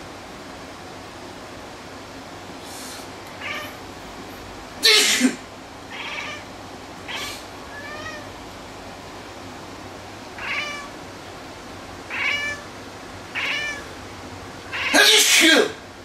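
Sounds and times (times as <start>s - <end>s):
cat meowing: 3.3s - 3.8s, 5.9s - 6.5s, 7.1s - 8.3s, 10.4s - 11.0s, 12.1s - 12.7s, 13.3s - 13.9s, 14.7s - 15.2s
person sneezing: 4.8s - 5.4s, 14.9s - 15.8s.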